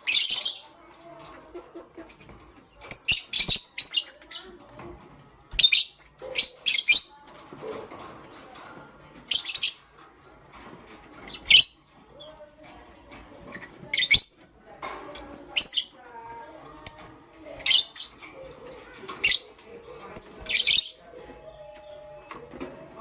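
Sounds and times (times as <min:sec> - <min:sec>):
lovebirds chattering: 0:00.0 - 0:23.0.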